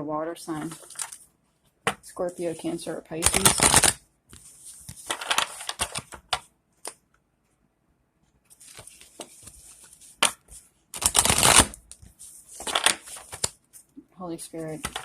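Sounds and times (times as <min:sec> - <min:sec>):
cards being shuffled: 0:01.9 - 0:07.0, 0:08.5 - 0:13.9, 0:14.5 - 0:15.0.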